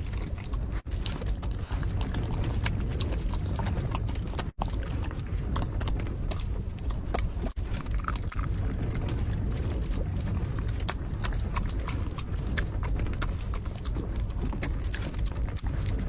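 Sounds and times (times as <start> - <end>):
strong wind buffeting: 0.0 - 16.0.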